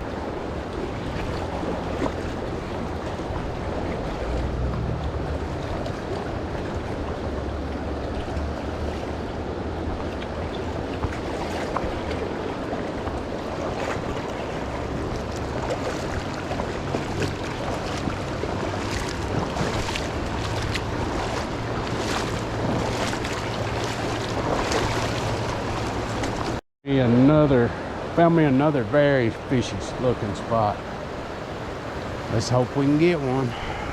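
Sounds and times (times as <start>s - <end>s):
wind rumble on microphone: 0.0s - 26.6s
river water rushing: 0.0s - 33.9s.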